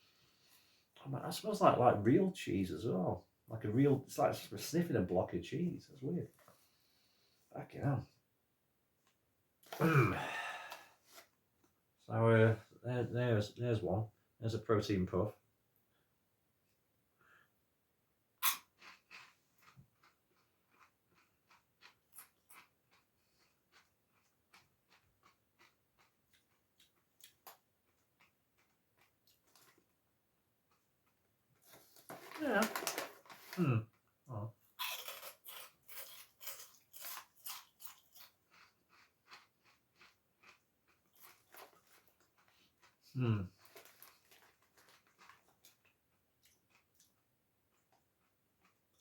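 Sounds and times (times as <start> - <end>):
crunchy snack being chewed: 18.4 - 30.0, 34.7 - 49.0.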